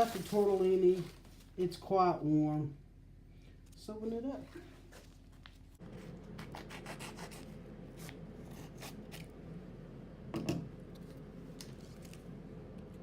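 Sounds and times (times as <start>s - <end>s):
packaging rustle: 0.0s - 1.6s
steady low hum: 0.0s - 13.0s.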